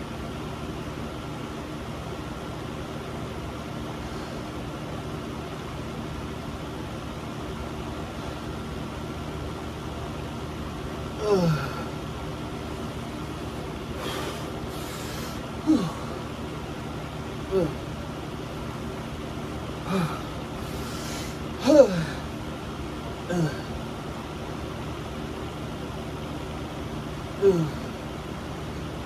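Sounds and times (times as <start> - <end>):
steady room hum: 0.0 - 29.0.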